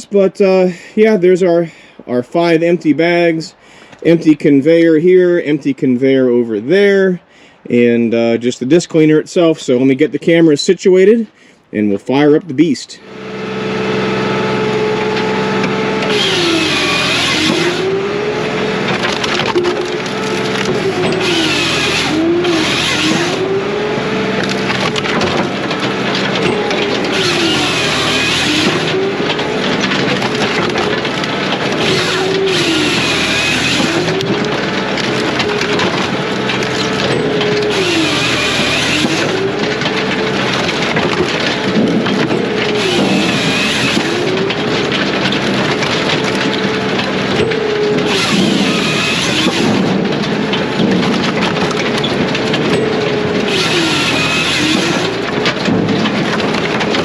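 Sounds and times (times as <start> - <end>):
diesel engine droning: 11.0 - 57.0
saw chain rasping through log: 13.8 - 50.0, 50.6 - 57.0.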